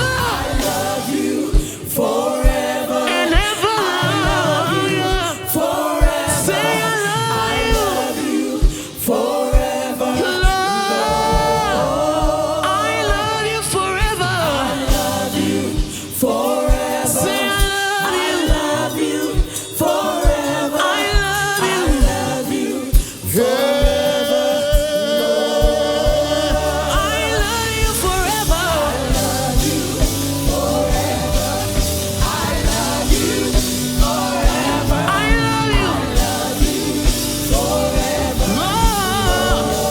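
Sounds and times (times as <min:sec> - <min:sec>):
band with drums and bass: 0:00.0 - 0:39.9
singer and choir singing: 0:00.0 - 0:39.9.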